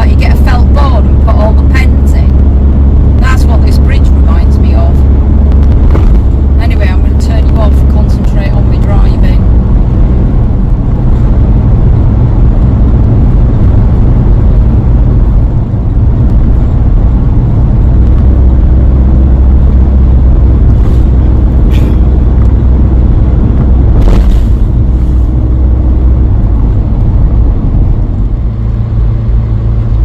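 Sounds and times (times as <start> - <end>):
road noise: 0.0 - 30.0
vehicle engine drone: 0.0 - 30.0.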